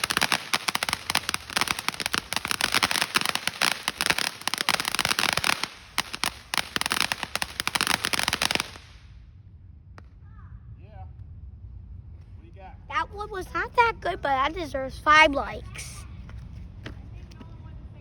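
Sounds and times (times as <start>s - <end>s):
firework crackling: 0.0s - 9.2s.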